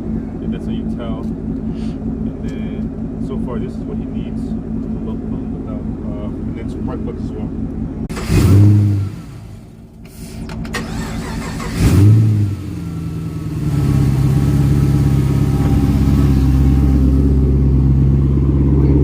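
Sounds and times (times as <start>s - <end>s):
car engine revving and running: 0.0s - 19.0s.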